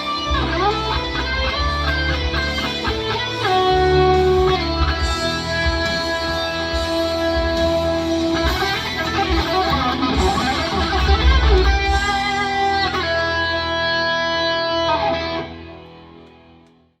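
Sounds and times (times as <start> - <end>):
electric guitar improvising: 0.0 - 17.0.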